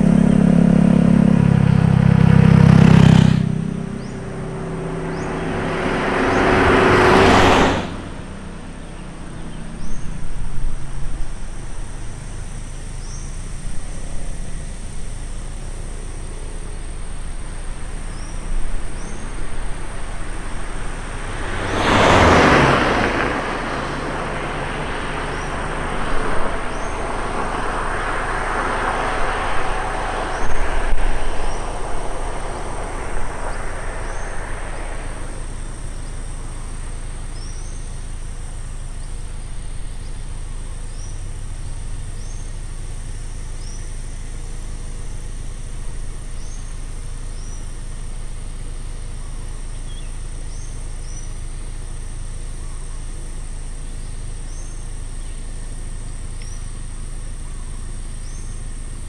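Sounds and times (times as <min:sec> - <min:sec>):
vehicle passing: 0:00.0 - 0:12.0, 0:16.2 - 0:39.8
high insect buzz: 0:00.0 - 0:49.0
low steady rumble: 0:00.0 - 0:59.0.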